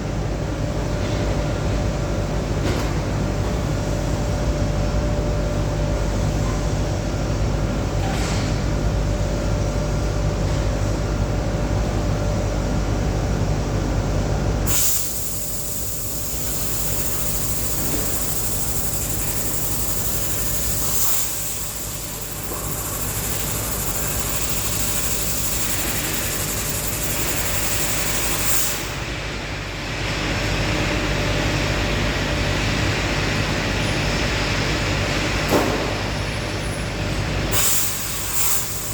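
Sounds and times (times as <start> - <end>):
machinery rumbling and hissing: 0.4 - 38.9.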